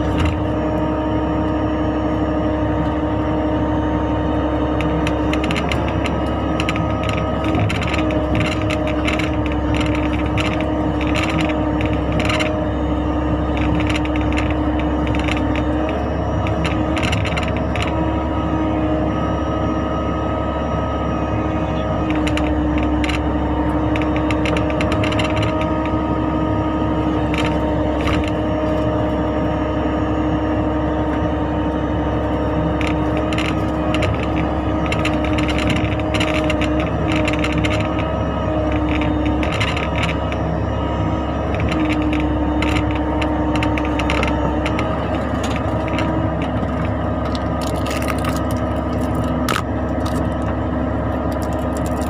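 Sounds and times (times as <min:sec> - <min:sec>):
mini excavator running: 0:00.0 - 0:52.0.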